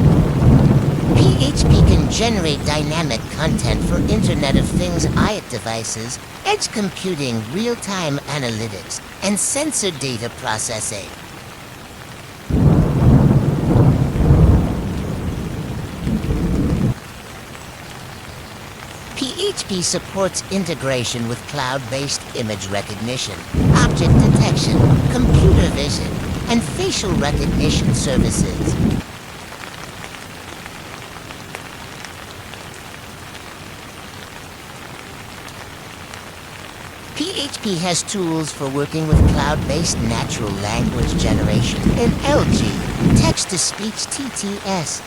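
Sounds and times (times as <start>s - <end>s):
thunderclap rumbling: 0.0s - 5.5s, 12.5s - 17.0s, 23.5s - 29.0s, 39.1s - 43.4s
steady rain: 0.0s - 45.0s.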